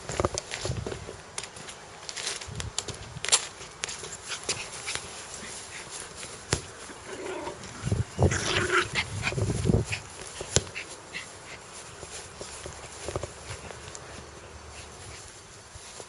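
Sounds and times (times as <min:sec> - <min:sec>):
dog growling: 0:06.9 - 0:09.4.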